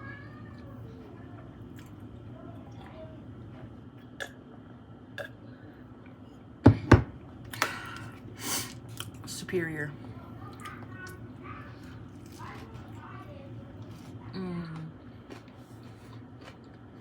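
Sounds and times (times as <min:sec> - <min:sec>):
faint chewing: 0:00.6 - 0:04.4, 0:10.4 - 0:17.0
crackly crunching: 0:10.5 - 0:17.0.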